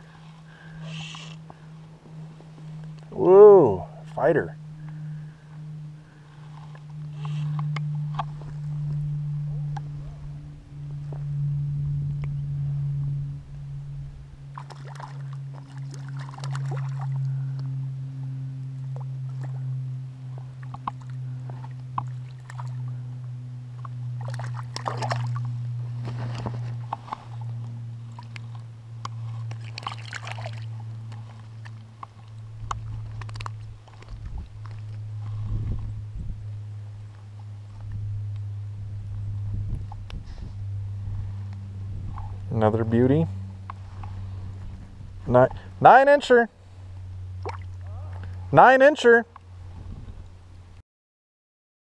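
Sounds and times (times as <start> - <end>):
steady low hum: 0.0 - 50.8
water splashing and sloshing: 14.5 - 17.7, 18.8 - 19.6, 20.2 - 23.1, 23.8 - 35.4, 47.3 - 48.5.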